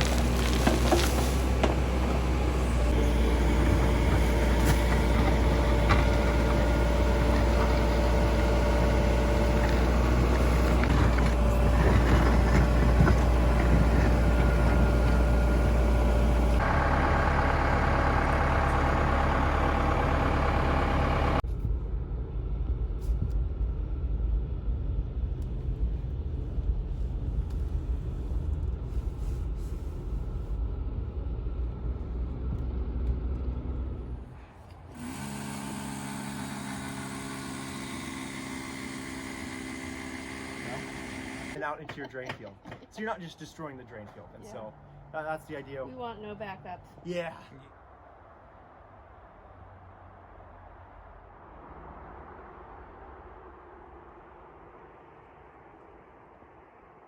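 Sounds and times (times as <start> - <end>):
heavy diesel machinery running: 0.0 - 23.0, 29.7 - 43.4.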